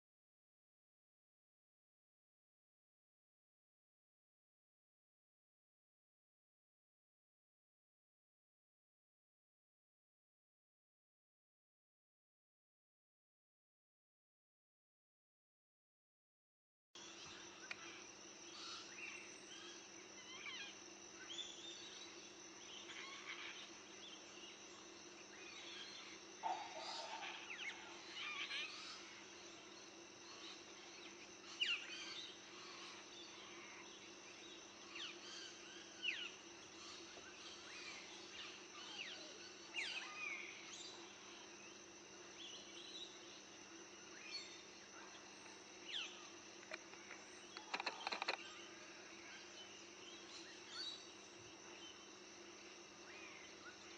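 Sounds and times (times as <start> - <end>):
high insect-like drone: 17.0 - 53.9
birds chirping: 45.9 - 52.1.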